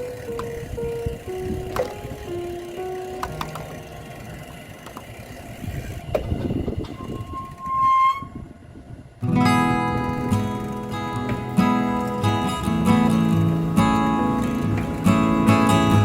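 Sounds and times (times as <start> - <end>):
song with guitar: 9.2 - 16.0.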